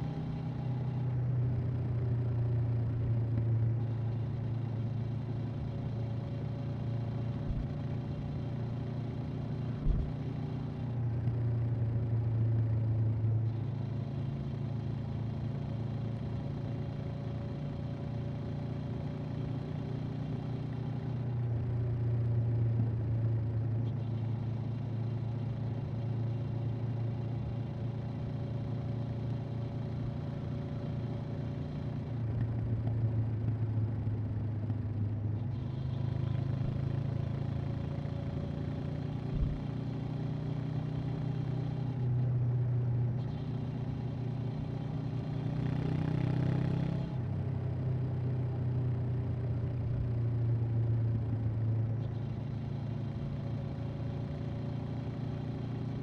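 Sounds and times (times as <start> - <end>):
motorcycle engine revving: 43.2 - 47.6.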